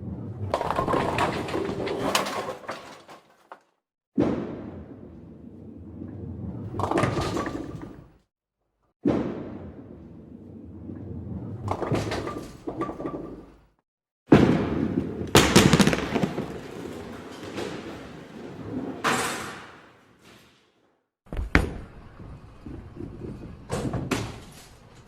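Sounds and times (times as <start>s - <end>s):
bowling pins crashing and clattering: 0.4s - 4.5s, 6.5s - 8.1s, 11.6s - 13.7s, 14.3s - 20.2s
bowling ball rumbling down lane: 14.4s - 19.7s.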